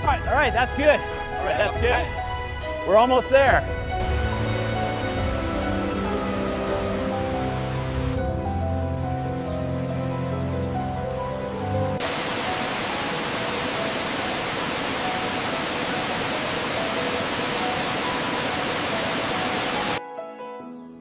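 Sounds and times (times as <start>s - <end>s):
faint background music: 0.0s - 11.7s
loud rushing hiss: 12.0s - 20.0s.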